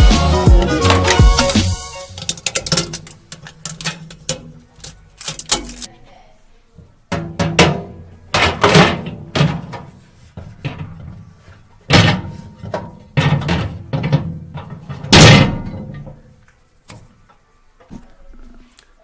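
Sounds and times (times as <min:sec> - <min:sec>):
music: 0:00.0 - 0:03.0.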